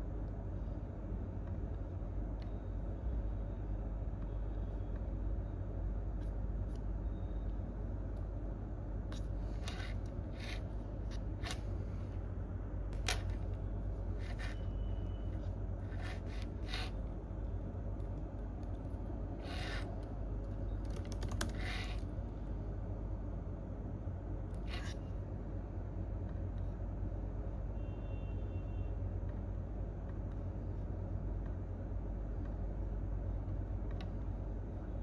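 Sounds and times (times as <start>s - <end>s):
low room hum: 0.0s - 35.0s
computer keys clicking: 20.0s - 22.0s.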